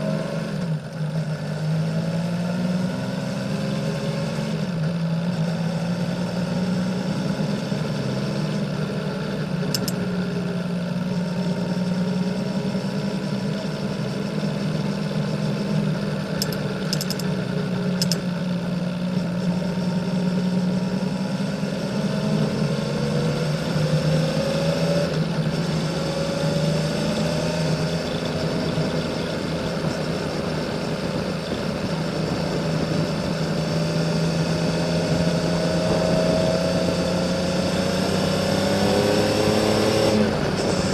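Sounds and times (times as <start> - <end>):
motorcycle engine climbing: 0.0 - 40.9.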